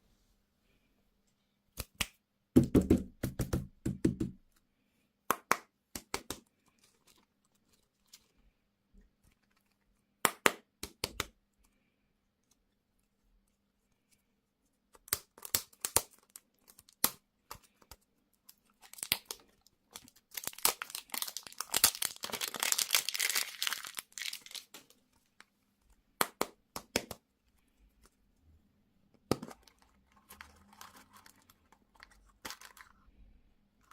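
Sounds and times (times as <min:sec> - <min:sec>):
packaging crinkling and tearing: 0:18.5 - 0:24.9, 0:29.6 - 0:33.0.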